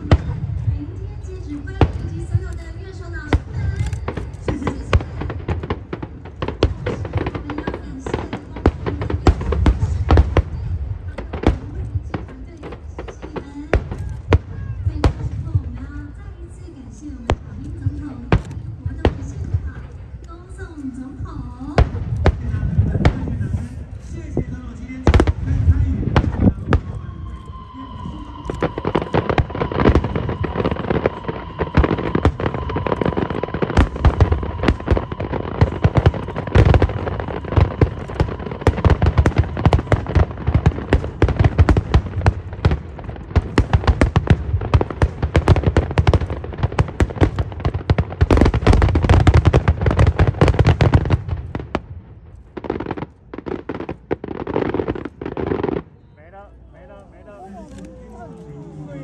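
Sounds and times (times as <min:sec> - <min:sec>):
fireworks bangs and crackles: 0:00.0 - 0:59.0
high firework whistle: 0:26.7 - 0:40.1.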